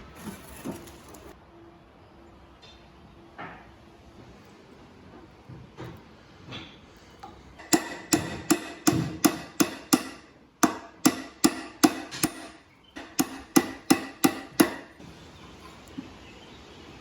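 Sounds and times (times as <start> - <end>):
hammer blows ringing: 7.6 - 15.0.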